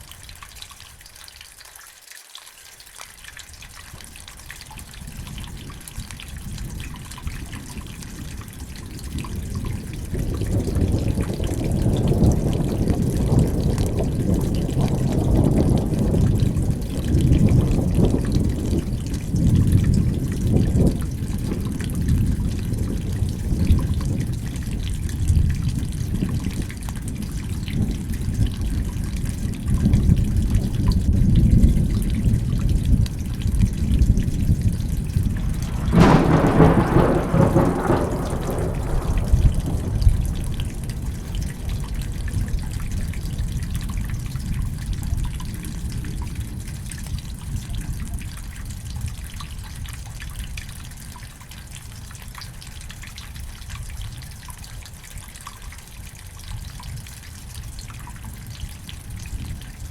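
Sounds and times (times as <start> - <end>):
rain falling: 0.0 - 59.9
rolling thunder: 5.0 - 49.4.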